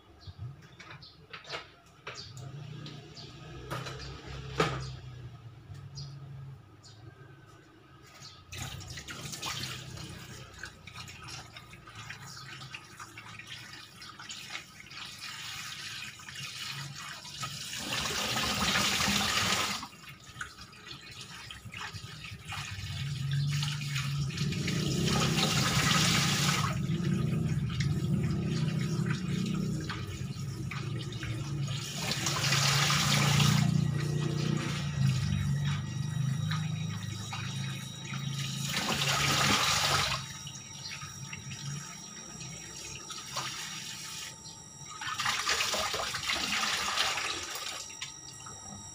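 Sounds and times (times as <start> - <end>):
tap water running into sink: 8.6 - 40.4.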